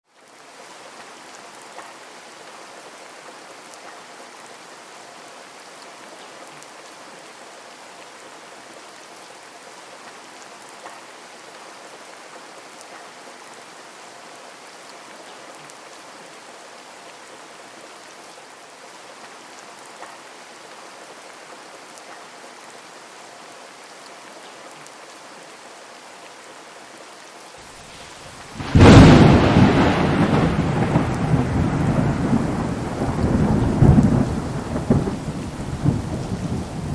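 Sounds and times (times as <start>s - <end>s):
heavy rain falling: 27.6s - 36.9s
thunder clap rumbling: 28.6s - 36.9s.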